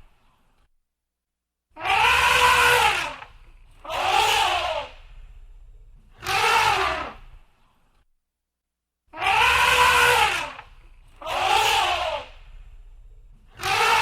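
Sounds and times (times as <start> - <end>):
elephant trumpeting: 1.8 - 5.4, 6.2 - 7.2, 9.2 - 14.0.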